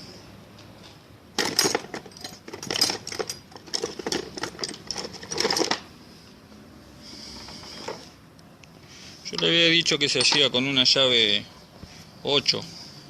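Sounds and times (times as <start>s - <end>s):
metallic clicking and clattering: 1.4s - 5.9s.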